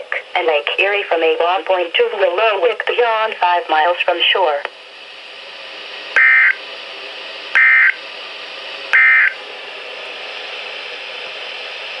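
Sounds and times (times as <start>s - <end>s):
radio hiss: 0.0s - 8.0s
loud digital squawks: 6.2s - 6.6s, 7.6s - 8.0s, 9.0s - 9.4s.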